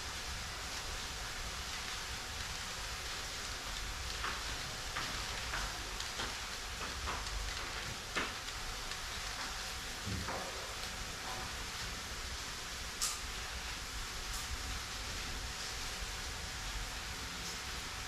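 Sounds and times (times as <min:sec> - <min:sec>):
recording hiss: 0:00.0 - 0:18.0.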